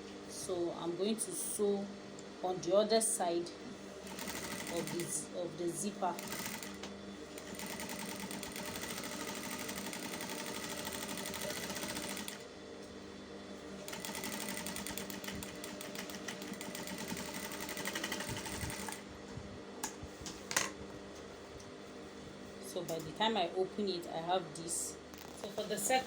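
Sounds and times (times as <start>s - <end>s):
sewing machine running: 4.0s - 5.2s, 6.1s - 12.4s, 13.9s - 19.0s.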